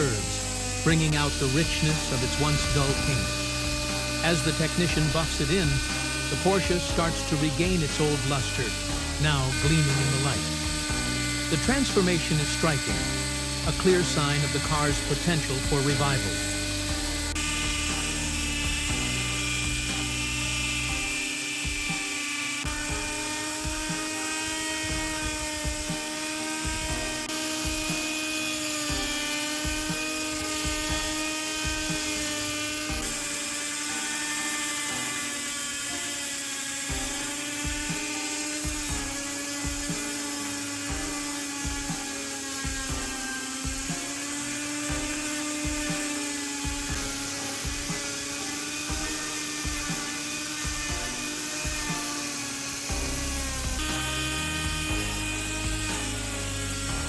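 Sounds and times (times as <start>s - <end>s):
electric rotary tool whining: 0.0s - 57.0s.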